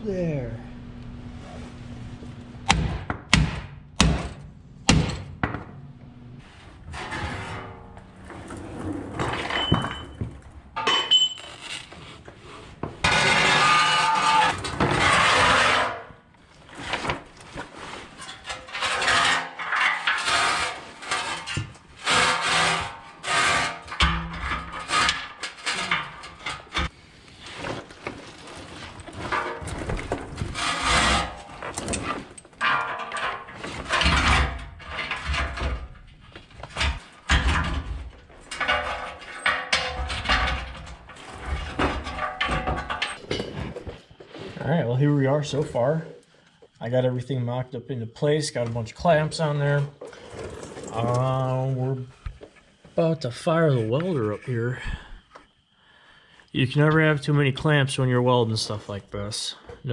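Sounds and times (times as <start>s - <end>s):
steel pieces clanking and scraping: 6.8s - 43.9s.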